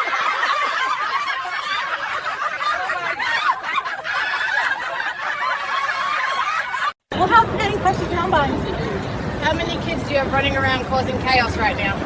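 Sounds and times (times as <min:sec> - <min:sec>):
people laughing: 0:00.0 - 0:07.0.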